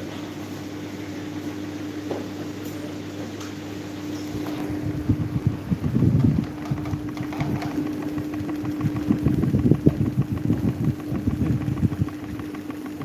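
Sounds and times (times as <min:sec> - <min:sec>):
fan motor hum: 0:00.0 - 0:13.0
fast irregular rattle: 0:04.5 - 0:13.0.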